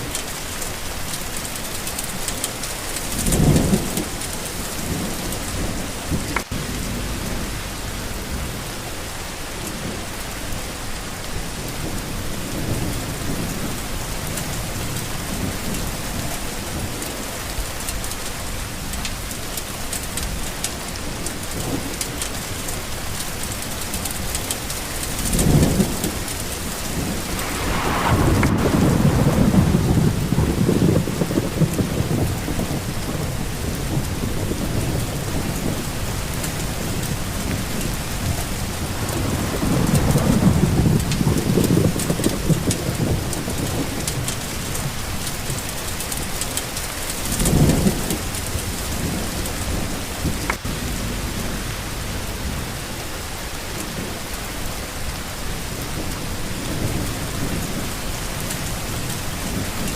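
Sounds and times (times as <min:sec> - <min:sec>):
heavy rain: 0:00.0 - 0:59.9
thunder rumbling: 0:25.2 - 0:45.9.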